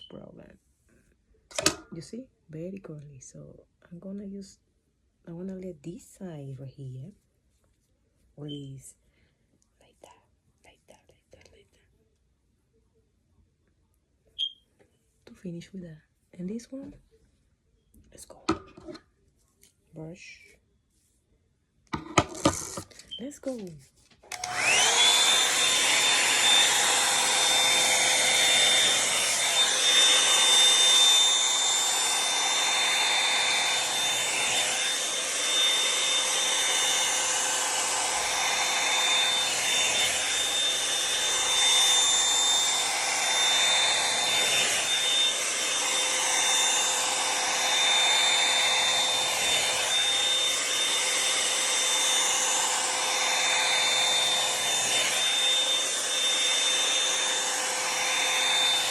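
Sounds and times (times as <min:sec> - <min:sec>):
hair dryer brush blowing: 0:01.5 - 0:02.0, 0:22.0 - 0:58.9.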